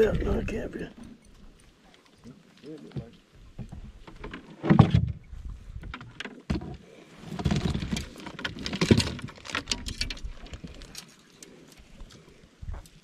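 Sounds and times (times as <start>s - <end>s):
gear clicking and rattling: 7.3s - 13.0s.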